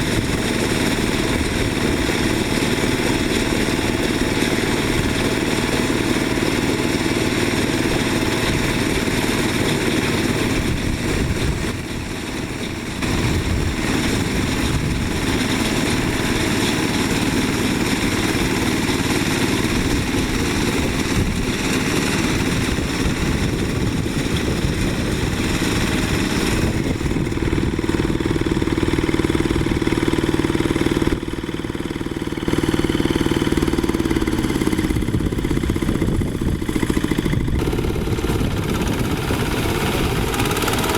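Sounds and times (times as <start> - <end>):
small diesel engine running: 0.0 - 40.9.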